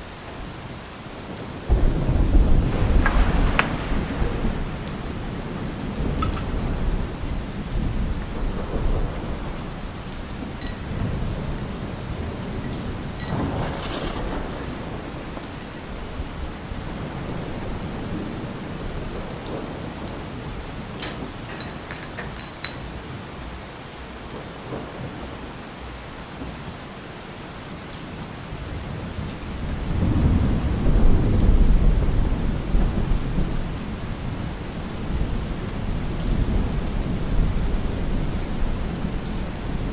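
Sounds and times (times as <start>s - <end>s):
steady rain: 0.0s - 39.9s
rolling thunder: 1.6s - 21.5s, 28.6s - 39.9s.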